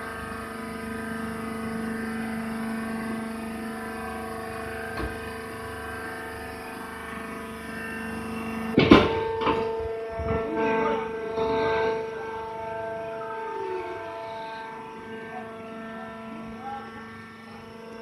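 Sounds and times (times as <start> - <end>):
hydraulic pump humming: 0.0 - 18.0
loud clunk: 8.8 - 10.4.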